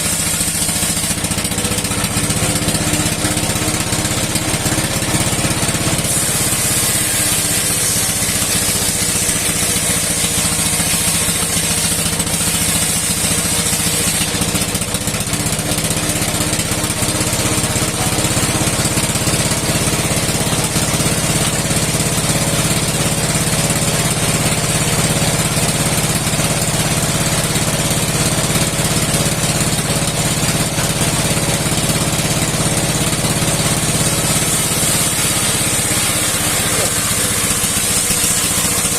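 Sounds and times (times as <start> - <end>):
old engine running: 0.0 - 38.9.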